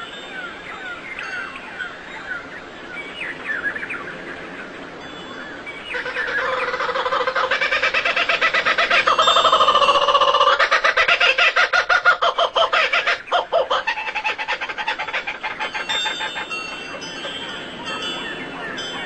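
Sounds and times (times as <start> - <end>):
birds chirping: 0.0 - 19.0
rapidly pulsing bird call: 5.6 - 19.0.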